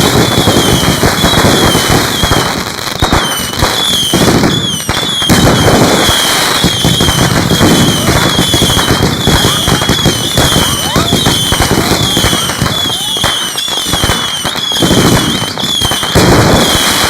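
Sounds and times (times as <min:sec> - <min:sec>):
fireworks crackling and popping: 0:00.0 - 0:17.0.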